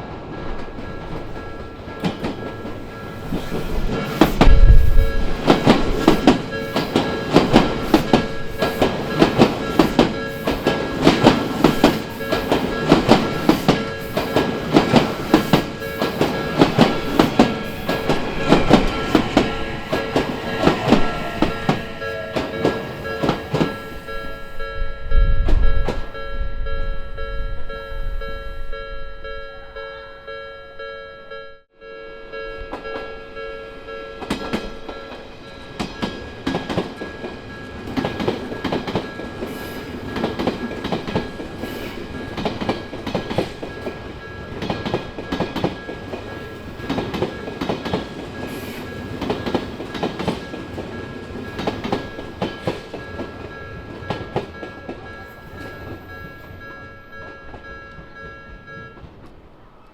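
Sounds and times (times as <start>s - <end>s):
train wheels clacking over rail joints: 0.4s - 24.3s, 34.2s - 56.1s
level-crossing warning bell: 0.8s - 59.5s.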